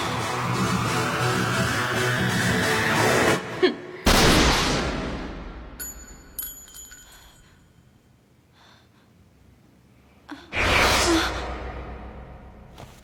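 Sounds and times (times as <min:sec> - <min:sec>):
loud gunshot blast: 0:04.1 - 0:05.6
blast: 0:04.1 - 0:05.7, 0:10.5 - 0:12.7
thin metallic rings: 0:05.8 - 0:07.9.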